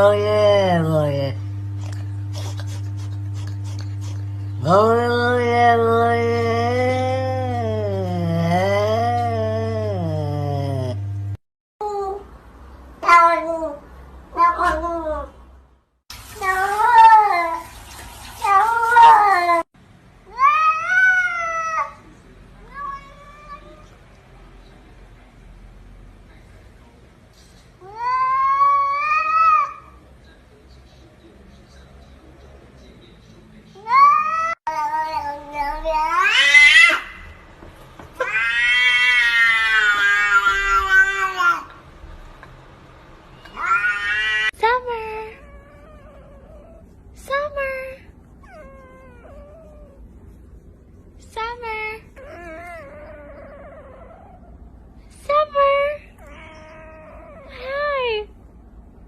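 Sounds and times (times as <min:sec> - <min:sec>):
cat meowing: 0:13.0 - 0:15.3, 0:38.2 - 0:41.7, 0:43.4 - 0:44.6
cat yowling: 0:13.0 - 0:15.3, 0:20.3 - 0:22.0, 0:22.6 - 0:23.9, 0:27.8 - 0:30.0, 0:33.8 - 0:37.3, 0:38.2 - 0:41.7, 0:43.5 - 0:44.6, 0:56.2 - 0:57.6.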